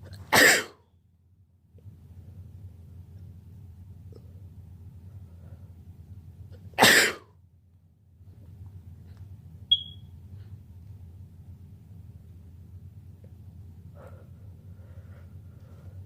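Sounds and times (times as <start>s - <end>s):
low steady hum: 0.0s - 16.0s
man sneezing: 0.4s - 0.8s, 6.8s - 7.3s
short high beep: 9.7s - 10.1s.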